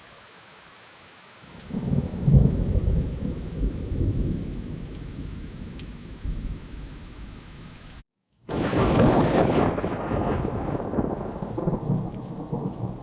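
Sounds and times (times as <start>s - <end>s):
steady rain: 0.0s - 13.0s
rolling thunderclap: 1.7s - 7.4s, 8.5s - 13.0s.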